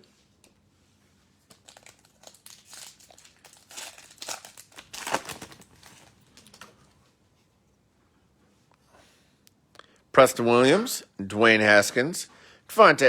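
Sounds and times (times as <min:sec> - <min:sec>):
plastic foil wrapper crinkling: 0:01.4 - 0:07.0.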